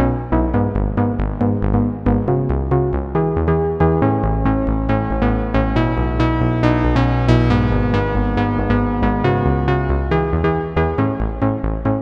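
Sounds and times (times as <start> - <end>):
synthesizer bass line: 3.0 - 11.4
synthesizer plucky notes: 7.1 - 10.4.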